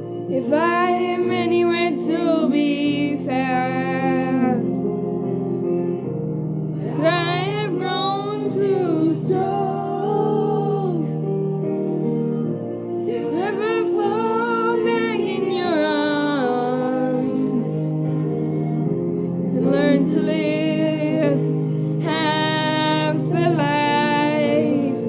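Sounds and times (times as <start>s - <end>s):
backing chords: 0.0s - 25.0s
woman singing with vibrato: 0.3s - 4.8s, 6.8s - 11.2s, 13.1s - 17.9s, 19.5s - 25.0s.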